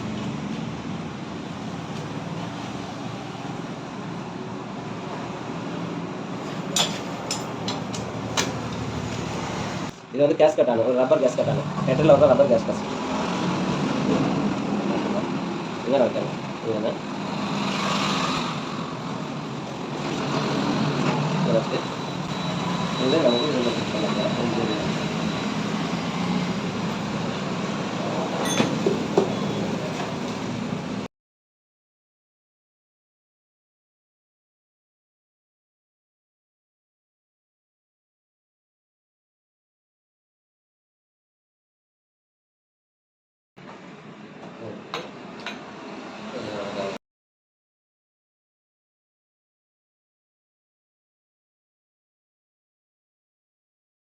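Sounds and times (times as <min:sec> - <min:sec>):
workshop hum: 0:00.0 - 0:31.1, 0:43.6 - 0:47.0.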